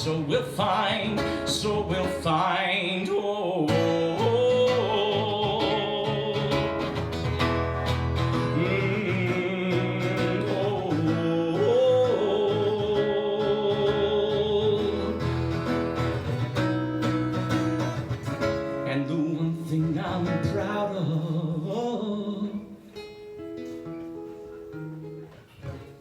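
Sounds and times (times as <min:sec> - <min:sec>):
man singing with vibrato: 0:00.0 - 0:16.0, 0:18.4 - 0:23.2
strummed acoustic guitar: 0:00.0 - 0:26.0.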